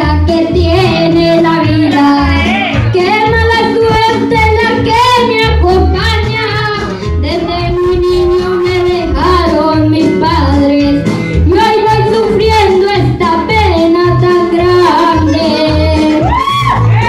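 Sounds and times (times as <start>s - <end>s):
high voice singing with vibrato: 0.0s - 17.0s
instrumental accompaniment: 0.0s - 17.0s.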